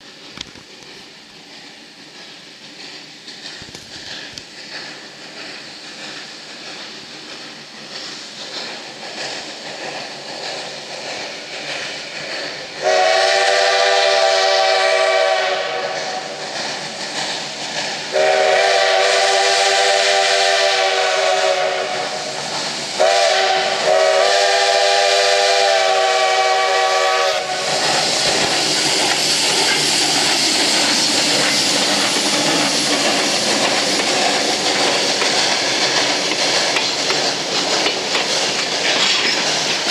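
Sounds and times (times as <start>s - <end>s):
loud steam hiss: 0.0s - 39.9s
steam engine exhaust chuffing: 4.8s - 39.9s
steam whistle chord: 12.8s - 16.3s, 18.1s - 22.3s, 23.0s - 27.8s.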